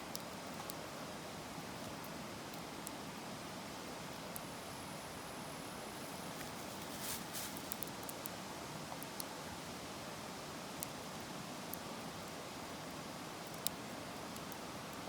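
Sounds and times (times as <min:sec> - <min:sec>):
fire hissing: 0:06.0 - 0:07.8.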